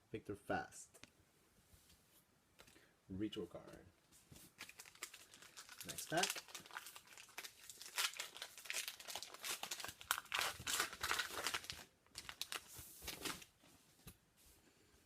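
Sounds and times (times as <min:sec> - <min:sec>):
wrapper tearing and crinkling: 0:04.6 - 0:13.5.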